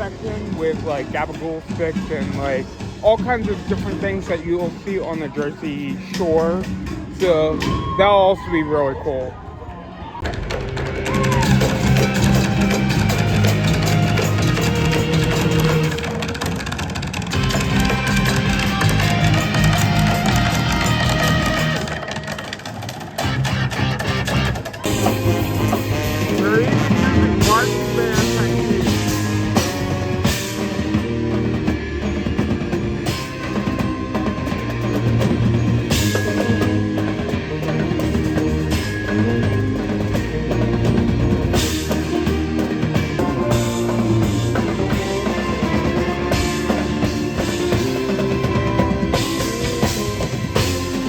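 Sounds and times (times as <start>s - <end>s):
loud live rock music: 10.6s - 22.0s, 23.2s - 51.0s.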